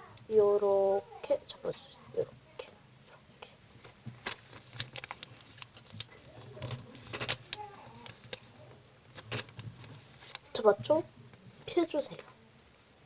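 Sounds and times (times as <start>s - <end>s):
paper crinkling and rustling: 3.7s - 12.3s.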